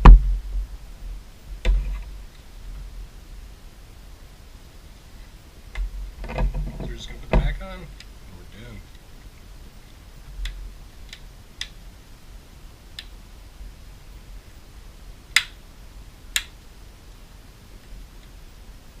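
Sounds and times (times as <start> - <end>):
tablet parts clicking: 15.3 - 15.6.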